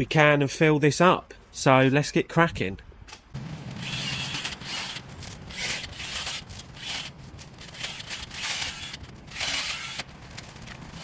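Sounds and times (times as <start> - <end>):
chainsaw cutting branches: 3.4 - 11.0
foliage rustling: 3.4 - 11.0.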